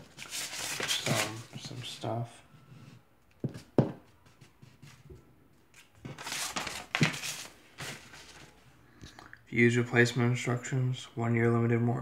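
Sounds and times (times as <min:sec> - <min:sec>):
paper pages rustling: 0:00.0 - 0:02.1, 0:05.6 - 0:08.6.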